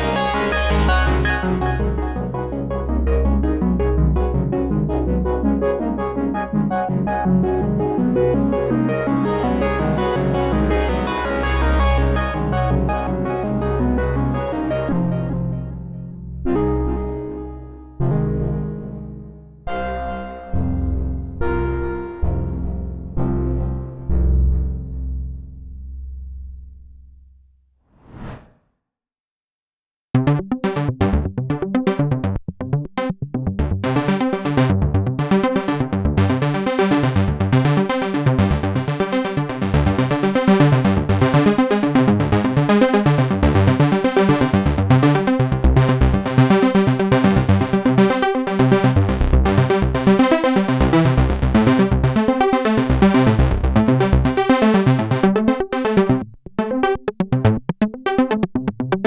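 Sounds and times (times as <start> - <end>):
fast synth arpeggio: 0.0 - 15.3, 33.6 - 59.0
pulsing synth bass notes: 0.0 - 27.1, 30.2 - 59.0.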